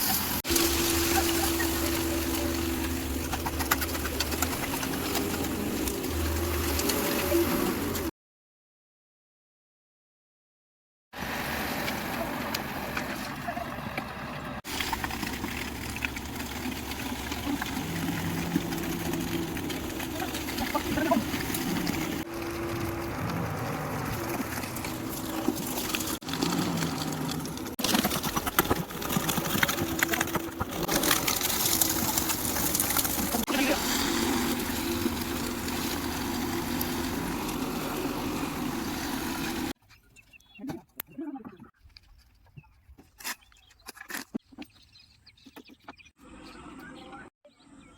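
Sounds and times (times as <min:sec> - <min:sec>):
engine running steadily: 0:00.0 - 0:08.1, 0:11.8 - 0:39.8.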